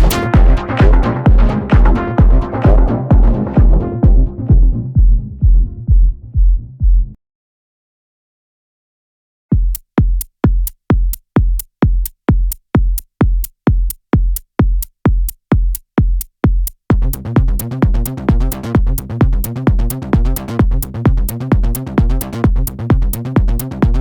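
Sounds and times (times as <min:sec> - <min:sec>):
electronic dance music: 0:00.0 - 0:05.0, 0:17.0 - 0:24.0
kick drum beating: 0:00.0 - 0:07.2, 0:09.5 - 0:24.0.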